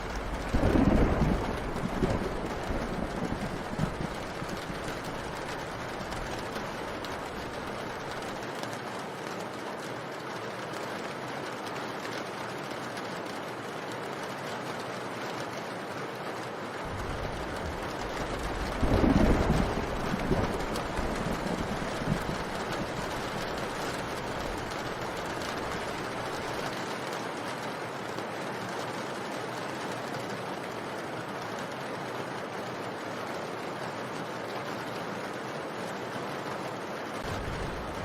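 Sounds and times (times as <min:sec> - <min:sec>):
low rumble of thunder: 0:00.0 - 0:08.2, 0:16.9 - 0:26.7, 0:37.2 - 0:38.0
steady rain falling: 0:00.0 - 0:38.0.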